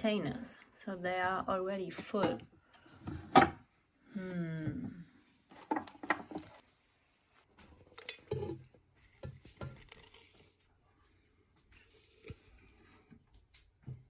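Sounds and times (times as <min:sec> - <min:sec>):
objects being handled: 0:05.5 - 0:06.7, 0:07.5 - 0:10.6.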